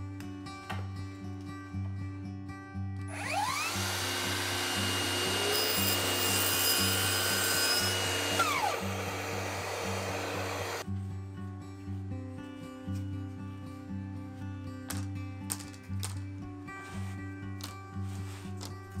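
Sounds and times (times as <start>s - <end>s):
acoustic guitar music: 0.0s - 3.1s, 10.8s - 19.0s
power tool motor whining: 3.1s - 10.8s.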